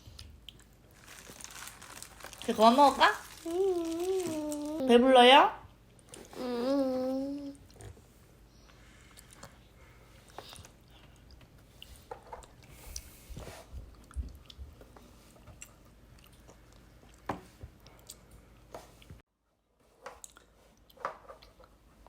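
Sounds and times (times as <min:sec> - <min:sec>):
toddler chewing food: 0:00.0 - 0:04.9, 0:06.0 - 0:18.3.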